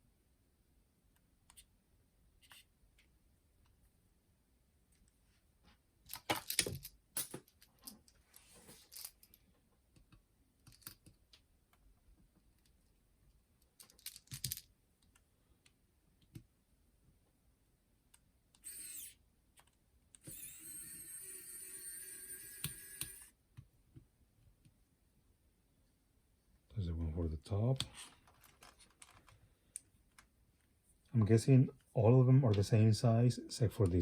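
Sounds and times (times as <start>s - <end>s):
small clicks and rattles: 6.1s - 11.8s, 12.4s - 15.2s, 27.8s - 30.3s.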